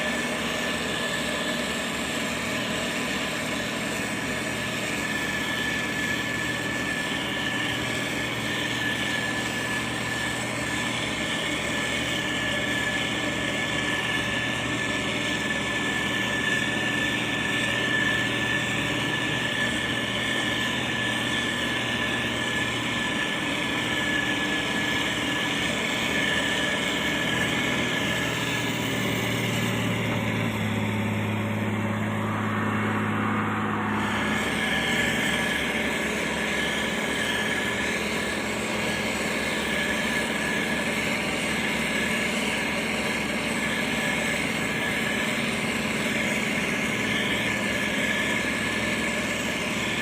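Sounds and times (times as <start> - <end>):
diesel engine running: 0.0 - 50.0.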